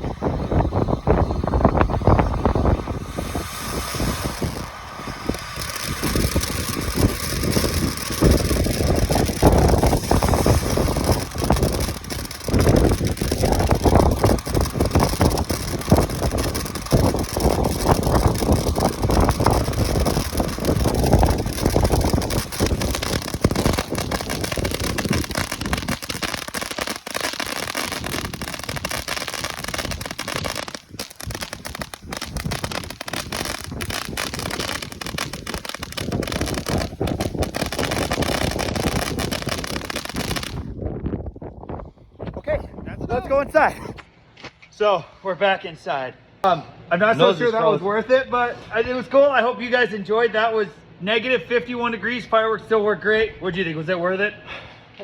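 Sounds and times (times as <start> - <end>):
strong wind buffeting microphone: 0.0 - 44.0
dense crackling: 0.6 - 40.7.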